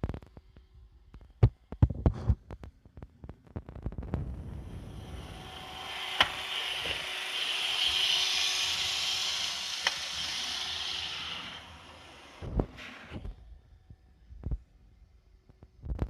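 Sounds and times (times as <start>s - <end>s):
robot vacuum running: 4.4s - 13.3s.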